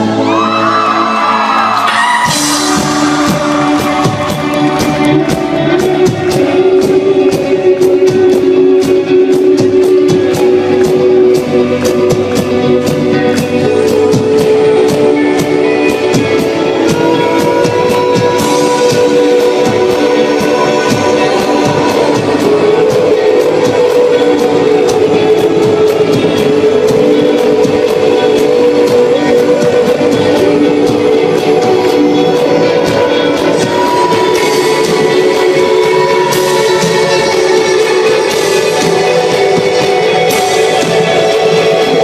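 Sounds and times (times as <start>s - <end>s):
guitars holding sustained notes: 0.0s - 42.0s
person singing: 0.0s - 42.0s
rock band playing: 0.0s - 42.0s.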